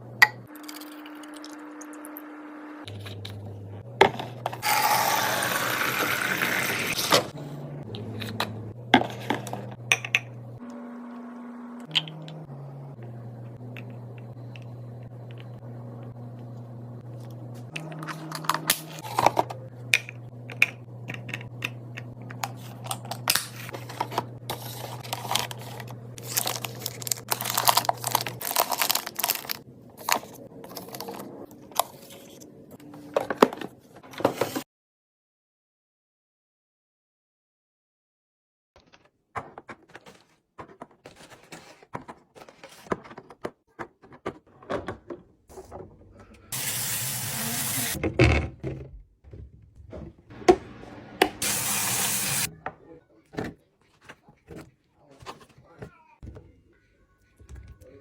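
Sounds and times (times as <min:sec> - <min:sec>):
containers clinking: 0:17.2 - 0:32.4
plastic packaging crinkling: 0:24.5 - 0:32.1.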